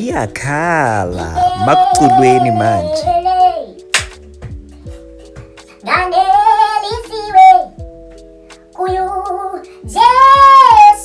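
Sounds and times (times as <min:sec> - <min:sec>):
high singing voice: 0:01.1 - 0:03.8
synth music with beat: 0:03.0 - 0:11.0.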